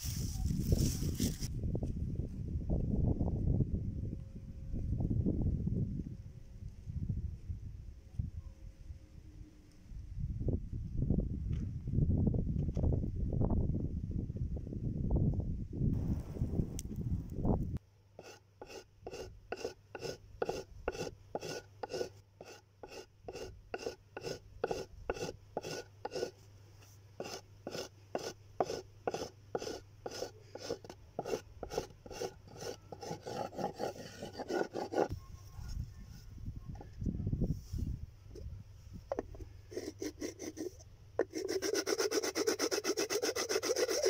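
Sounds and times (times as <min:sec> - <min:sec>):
hand tool rasping over surface: 0:18.2 - 0:26.4, 0:27.2 - 0:35.1, 0:39.7 - 0:44.0.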